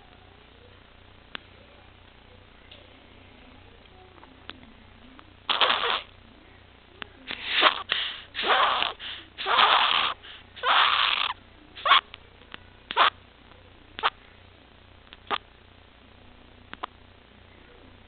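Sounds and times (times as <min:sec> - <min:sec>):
infant gasping breaths with stridor: 0:07.3 - 0:11.2.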